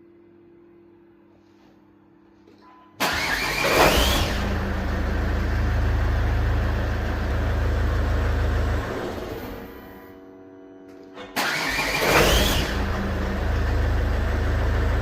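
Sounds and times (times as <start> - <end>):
starter motor whining: 3.0 - 5.5, 11.4 - 15.0
car engine running: 3.9 - 9.8, 11.7 - 15.0.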